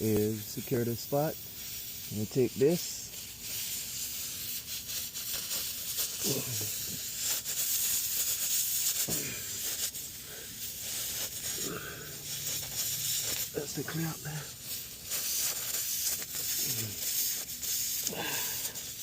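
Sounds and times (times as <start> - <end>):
air hissing from tire: 0.0 - 19.0.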